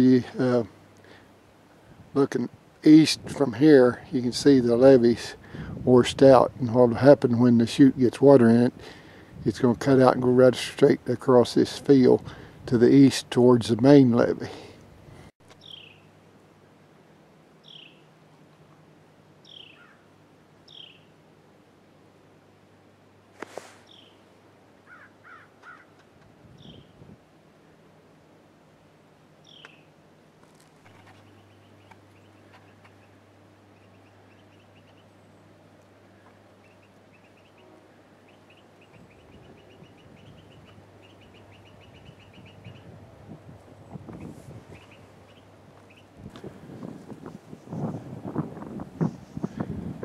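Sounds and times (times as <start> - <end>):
wind rumble on microphone: 1.9 - 3.6, 4.2 - 7.0, 26.2 - 27.2, 38.9 - 40.9, 41.8 - 45.2, 46.1 - 50.0
songbird calling: 15.5 - 16.1, 17.6 - 18.1, 19.4 - 21.2, 23.8 - 24.2, 24.8 - 27.0, 29.4 - 29.9, 30.8 - 43.0, 43.8 - 48.1
small animal clicking chirps: 29.5 - 29.8.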